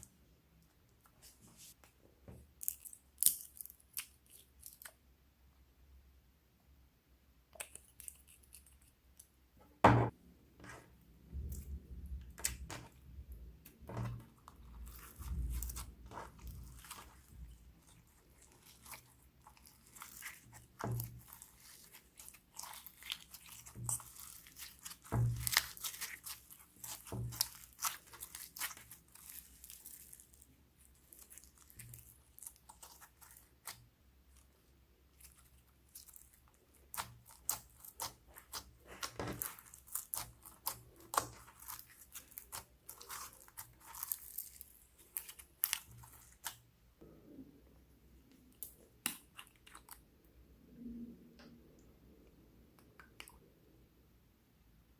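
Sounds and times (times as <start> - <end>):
slime squished by hand: 11.3 - 34.4, 35.1 - 46.7.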